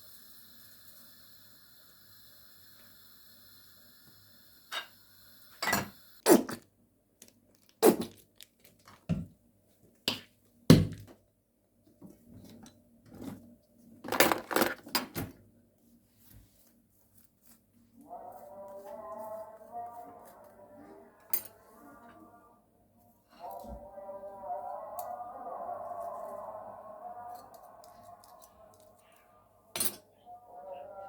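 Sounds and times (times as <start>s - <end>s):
dishes and utensils clattering: 5.6s - 6.0s.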